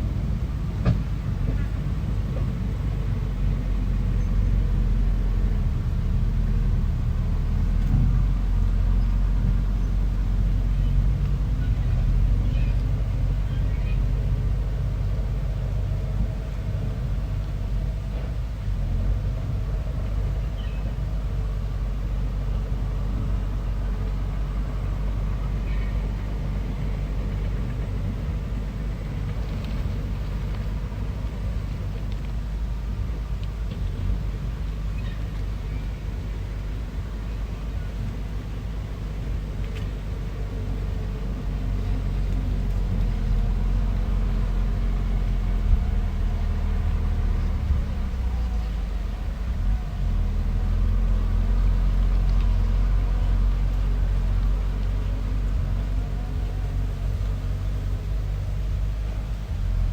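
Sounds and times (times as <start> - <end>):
bulldozer engine rumbling: 0.0 - 59.9.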